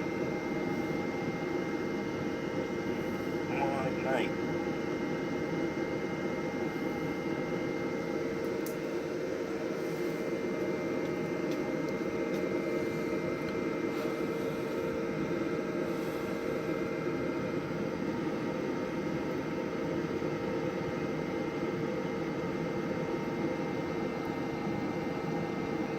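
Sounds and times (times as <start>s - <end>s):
grill fan humming: 0.0s - 20.3s.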